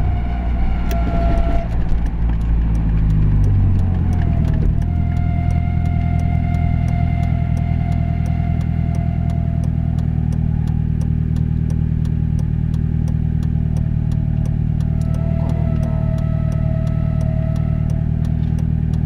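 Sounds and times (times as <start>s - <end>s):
vehicle running with whine: 0.0s - 19.0s
regular light ticking: 1.9s - 19.0s.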